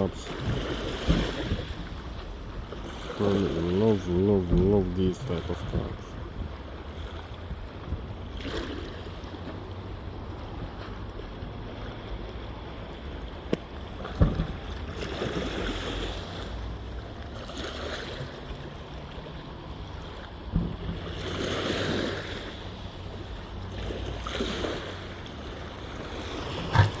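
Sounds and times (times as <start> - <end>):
water lapping against a boat: 0.0 - 27.0
wind rumbling on microphone: 5.5 - 8.4.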